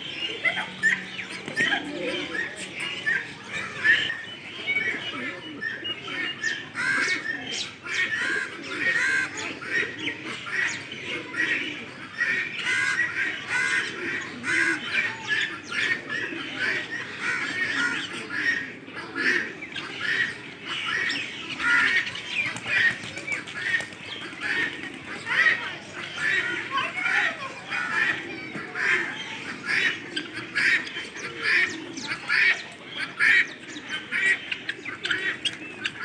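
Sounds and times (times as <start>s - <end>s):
birds chirping and squawking: 0.0s - 36.0s.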